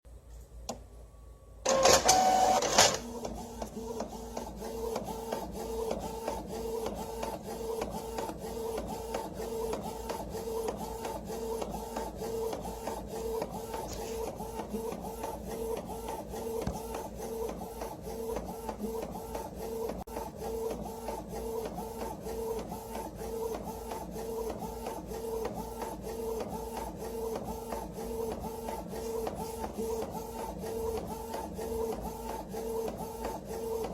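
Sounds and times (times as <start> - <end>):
printer mechanical pulse: 1.6 - 33.9
printer clatter: 1.7 - 33.9.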